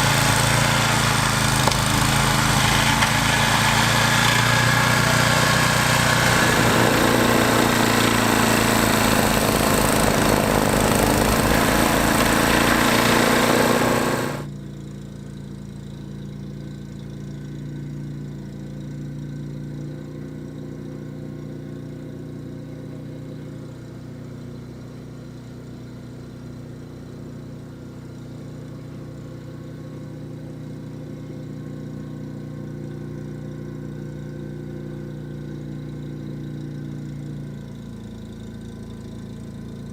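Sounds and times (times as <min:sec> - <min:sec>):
snowblower engine running: 0:00.0 - 0:14.5.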